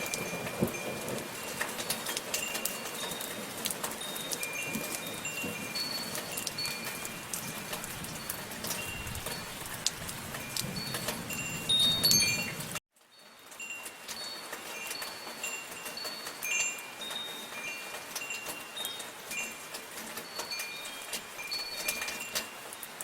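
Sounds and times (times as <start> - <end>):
steady rain: 0.0 - 23.0
wind chimes ringing: 0.0 - 23.0.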